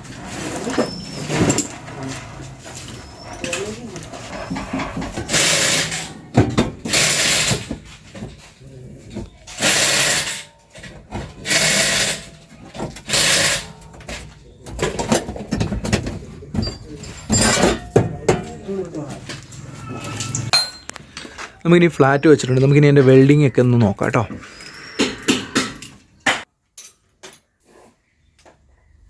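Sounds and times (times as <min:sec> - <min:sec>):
power tool bursts: 0:06.8 - 0:07.7, 0:09.6 - 0:10.5, 0:11.4 - 0:12.3.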